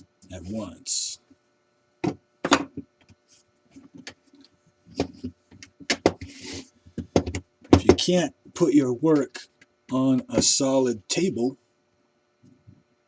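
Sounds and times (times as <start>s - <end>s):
sharp knocks on metal: 7.2s - 8.0s.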